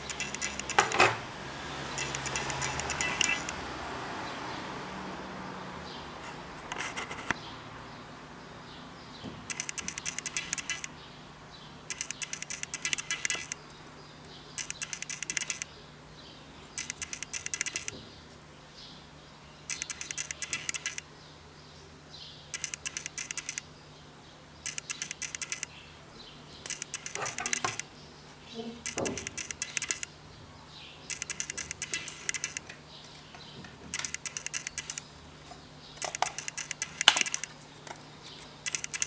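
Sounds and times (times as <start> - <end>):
screwdriver clicking: 0.0 - 1.2, 2.0 - 3.6, 9.5 - 10.9, 11.9 - 13.6, 26.6 - 27.9, 28.8 - 30.1, 31.1 - 32.8, 33.9 - 35.0, 36.0 - 37.5, 38.6 - 39.0.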